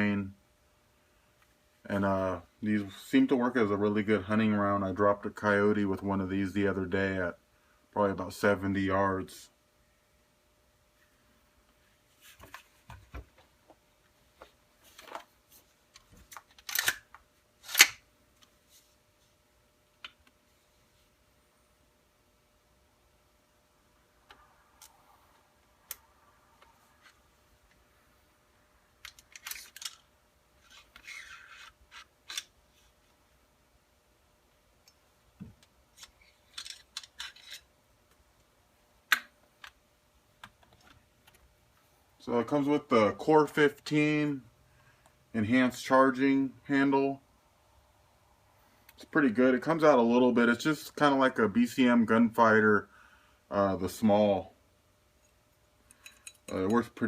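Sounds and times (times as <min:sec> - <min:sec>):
rifle handling clicks and scrapes: 0:16.0 - 0:18.0, 0:29.0 - 0:33.0, 0:35.9 - 0:37.7
rifle action sliding scrapes: 0:30.6 - 0:32.5.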